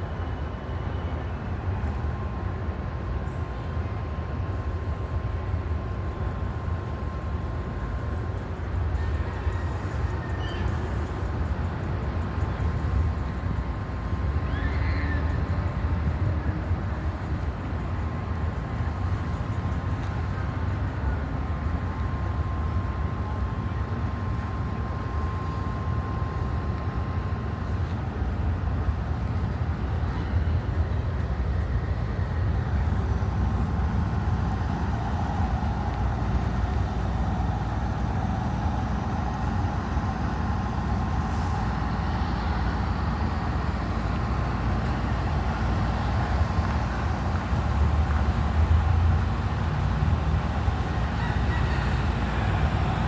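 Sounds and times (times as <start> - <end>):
faint steady whine: 0.0 - 53.0
street traffic rumble: 0.0 - 53.0.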